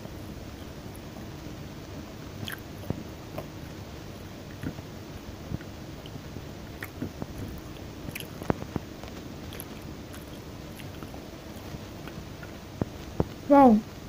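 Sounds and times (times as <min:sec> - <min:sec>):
soft mouth clicks: 0:02.4 - 0:03.5, 0:06.8 - 0:07.0
chewing and biting food: 0:02.4 - 0:03.8, 0:06.8 - 0:13.1.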